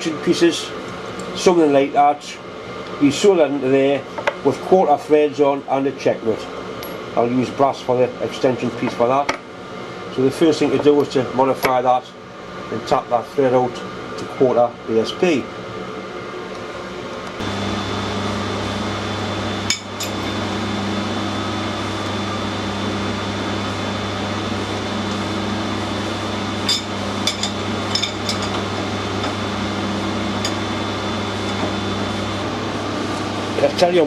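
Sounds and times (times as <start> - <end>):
machine motor humming: 16.9 - 34.0.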